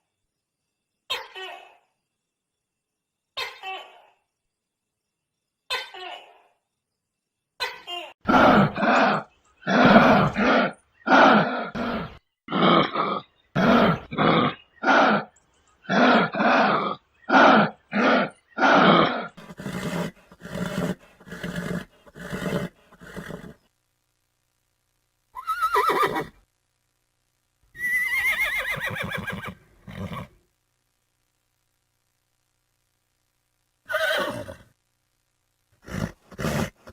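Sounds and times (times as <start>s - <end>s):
animal calls: 7.6s - 23.6s, 35.8s - 36.9s.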